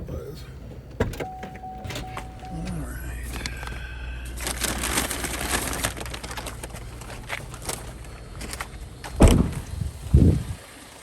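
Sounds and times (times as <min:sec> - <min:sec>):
loud thump: 0:09.2 - 0:09.7.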